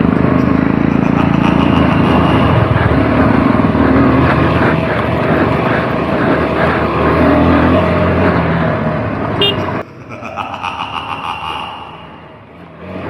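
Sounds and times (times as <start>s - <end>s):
motorcycle engine running: 0.0s - 9.8s.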